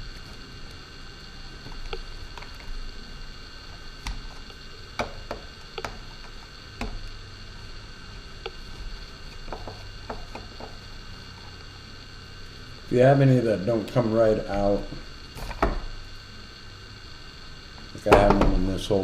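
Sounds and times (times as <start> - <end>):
steady electrical hum: 0.0 - 19.0.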